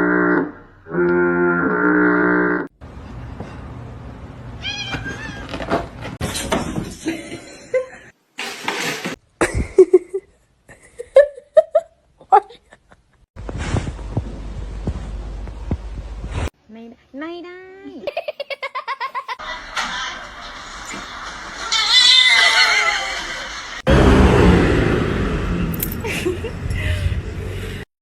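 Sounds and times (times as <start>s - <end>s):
cats meowing: 4.6s - 5.5s, 21.7s - 23.2s.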